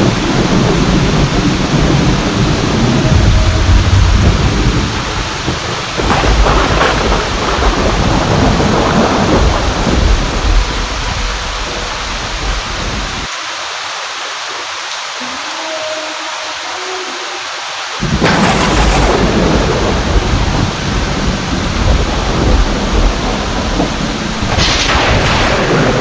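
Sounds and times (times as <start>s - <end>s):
rolling thunder: 0.0s - 13.3s, 18.0s - 26.0s
sharp thunderclap: 0.0s - 13.3s, 18.0s - 26.0s
heavy rain: 0.0s - 26.0s.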